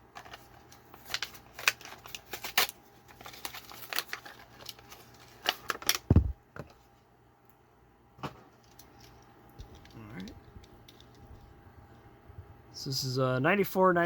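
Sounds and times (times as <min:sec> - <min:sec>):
plastic packaging crackling: 0:00.0 - 0:06.3.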